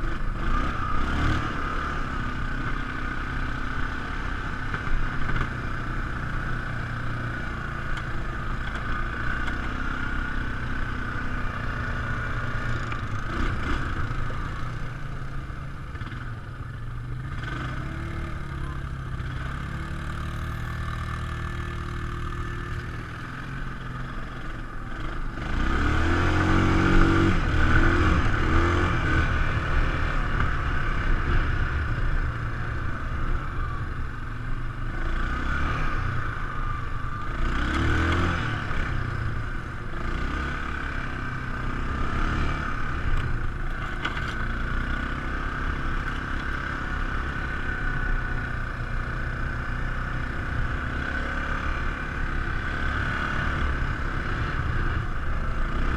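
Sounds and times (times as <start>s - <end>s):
atv engine revving: 0.0s - 55.9s.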